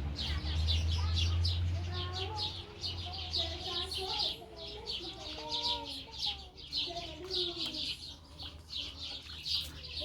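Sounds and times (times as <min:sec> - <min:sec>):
birds chirping: 0:00.0 - 0:10.0.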